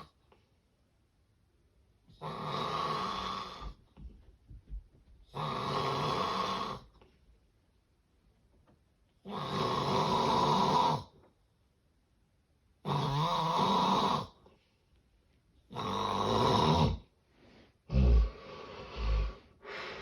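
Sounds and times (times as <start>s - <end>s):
loud rasping snores: 2.2s - 3.8s, 5.3s - 6.9s, 9.3s - 11.1s, 12.8s - 14.4s, 15.7s - 17.1s, 17.9s - 19.4s.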